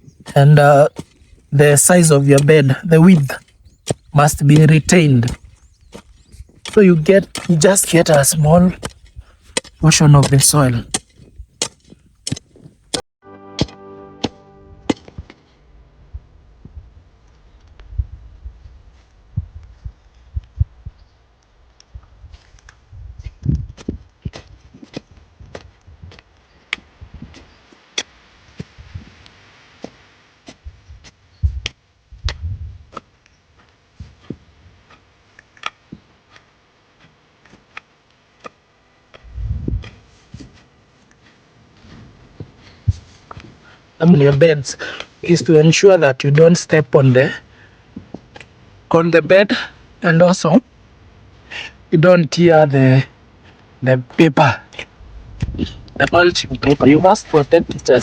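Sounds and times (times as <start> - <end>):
hoe striking stones: 5.9 - 7.5.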